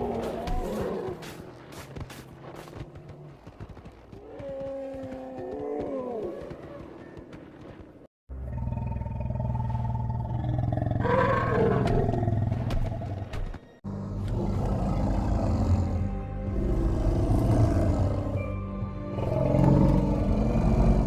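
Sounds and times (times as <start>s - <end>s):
deep rumbling mammoth roar: 14.0s - 18.5s, 19.1s - 21.0s.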